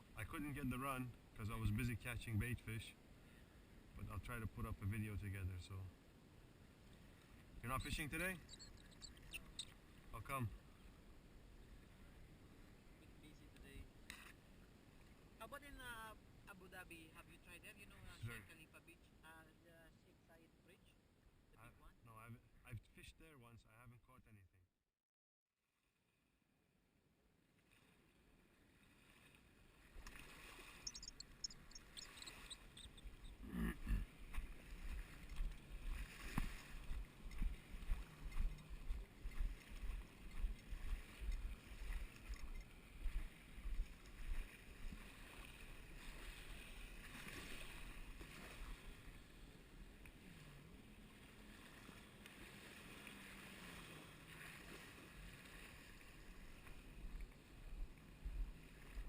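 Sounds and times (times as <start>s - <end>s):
distant boat motor hum: 30.4s - 42.6s, 50.1s - 56.0s.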